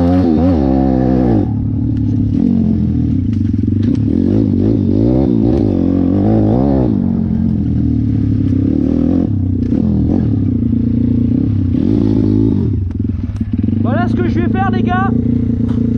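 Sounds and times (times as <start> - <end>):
dirt bike engine revving: 0.0 - 15.9.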